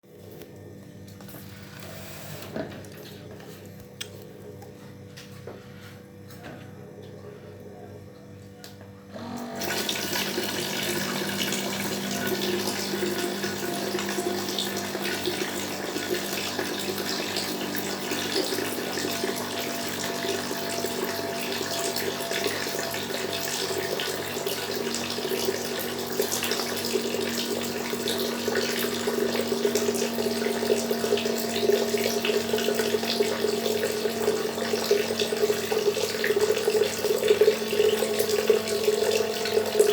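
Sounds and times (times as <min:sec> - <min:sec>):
water running into a kettle: 0:09.2 - 0:39.9.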